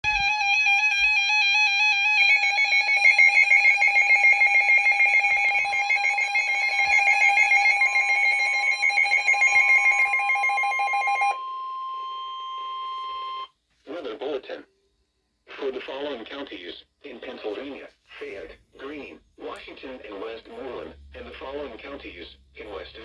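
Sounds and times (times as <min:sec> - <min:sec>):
harsh two-tone alarm: 0:00.1 - 0:13.5
high steady tone: 0:01.9 - 0:13.5.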